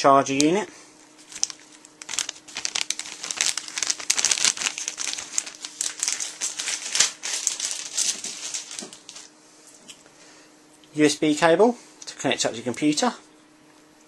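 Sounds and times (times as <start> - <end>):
packaging crinkling: 1.2 - 9.3.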